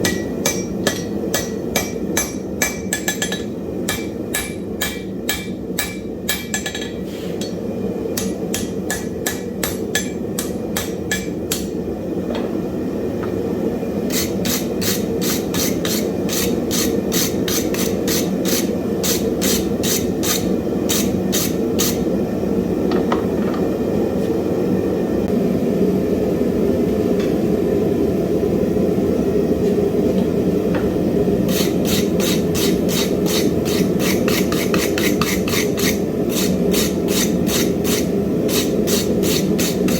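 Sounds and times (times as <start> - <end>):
hammer striking iron on anvil: 0.0 - 11.8.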